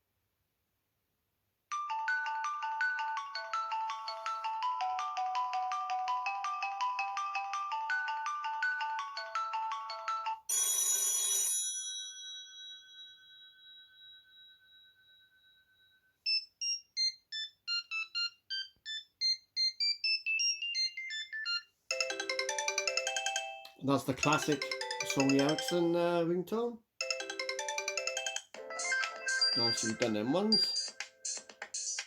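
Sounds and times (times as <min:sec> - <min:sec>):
phone ringtone melody: 0:01.7 - 0:15.6, 0:16.2 - 0:26.2, 0:27.0 - 0:32.0
bright chime ringing: 0:21.9 - 0:26.1, 0:27.0 - 0:30.9.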